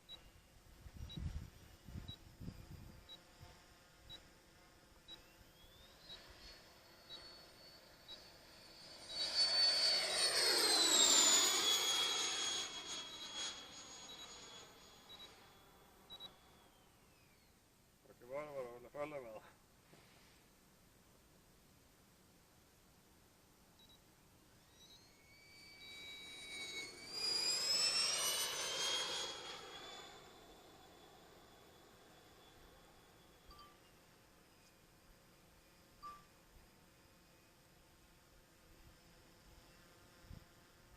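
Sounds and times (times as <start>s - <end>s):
electric ducted fan jet passing: 0.4s - 17.0s, 24.7s - 35.8s.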